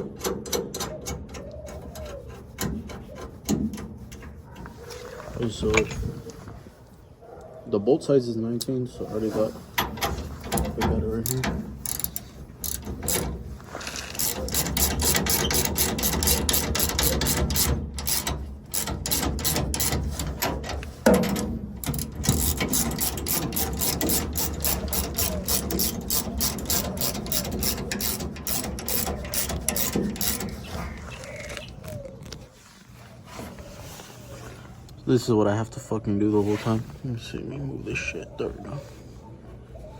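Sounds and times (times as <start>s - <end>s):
hand ratchet clicking rapidly: 10.5s - 13.4s, 14.0s - 20.5s, 21.8s - 30.7s.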